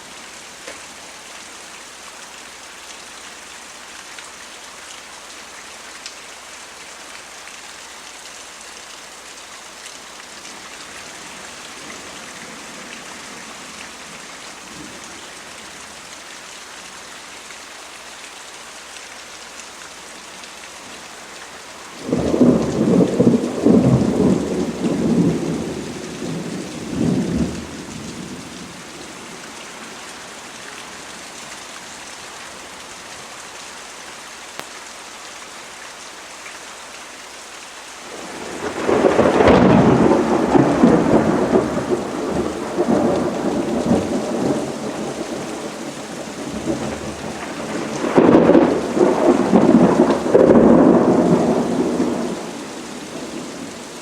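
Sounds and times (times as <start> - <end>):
steady rain: 0.0 - 54.0
rolling thunder: 22.0 - 28.4, 38.2 - 52.5.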